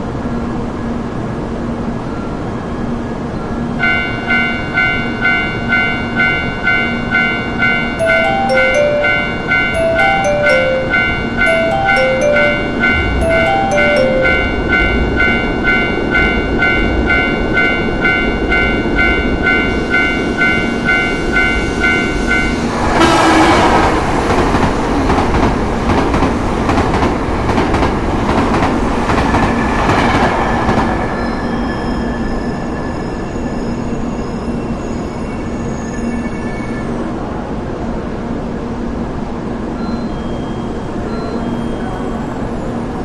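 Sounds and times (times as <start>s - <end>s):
train hum with whining tones: 0.0s - 43.0s
train passing with wheel clatter: 0.0s - 43.0s
warning signal chiming: 8.0s - 15.6s.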